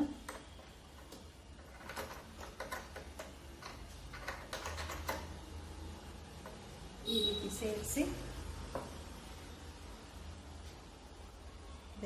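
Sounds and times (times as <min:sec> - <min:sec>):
sewing machine parts clicking: 0:00.2 - 0:05.4.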